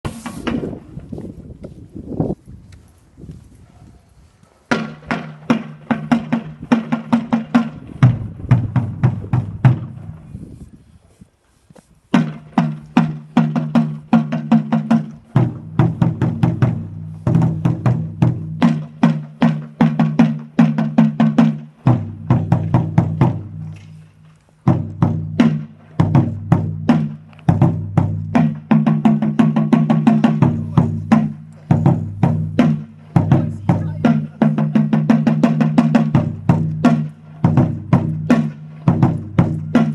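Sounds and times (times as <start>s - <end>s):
held low notes: 21.7s - 39.9s.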